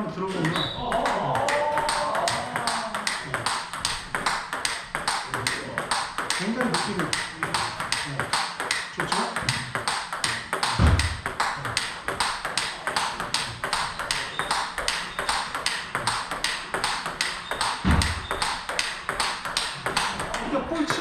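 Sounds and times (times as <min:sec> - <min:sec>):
ping pong ball hits: 0:00.3 - 0:21.0
low thuds: 0:10.8 - 0:11.4.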